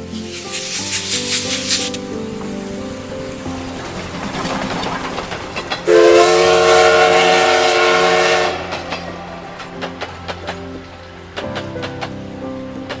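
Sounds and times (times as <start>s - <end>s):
train wheels clickety-clack: 0.1s - 13.0s
train whistle blast: 5.8s - 8.9s.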